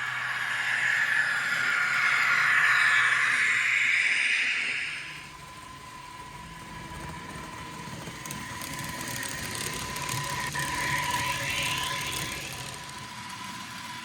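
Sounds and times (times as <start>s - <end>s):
model locomotive diesel engine sound: 0.0s - 14.0s
faint rapid clicking: 5.7s - 13.2s.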